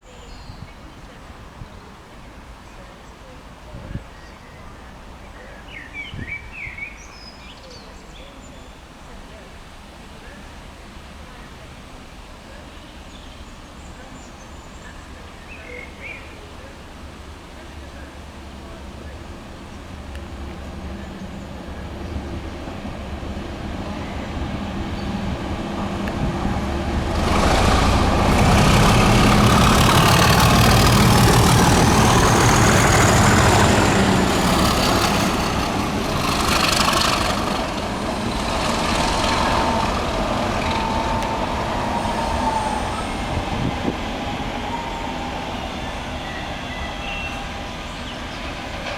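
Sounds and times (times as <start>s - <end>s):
train wagons running by: 16.4s - 48.9s
diesel locomotive engine thrash: 19.4s - 48.9s
high whistle: 40.8s - 47.8s.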